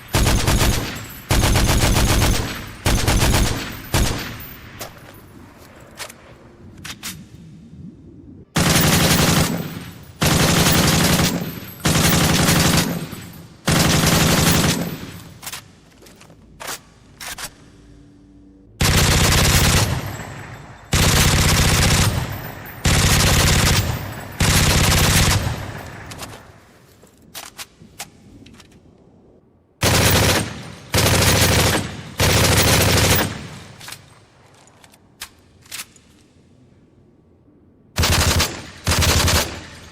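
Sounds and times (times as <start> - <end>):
automatic gunfire bursts: 0.1 - 4.2, 29.8 - 33.6.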